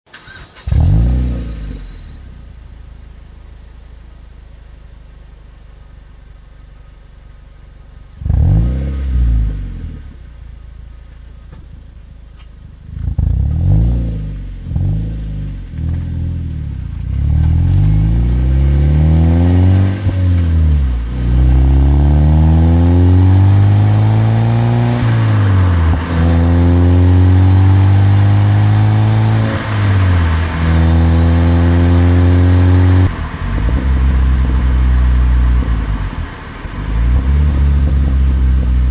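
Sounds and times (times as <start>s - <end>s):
car engine idling and revving: 0.1s - 38.9s
car accelerating through gear changes: 8.2s - 10.2s, 12.9s - 38.9s.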